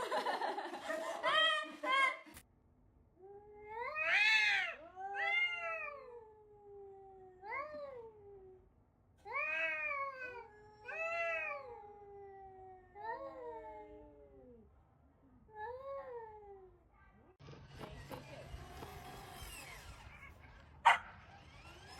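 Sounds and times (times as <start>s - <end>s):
cat meowing: 3.6s - 8.1s, 9.3s - 13.5s.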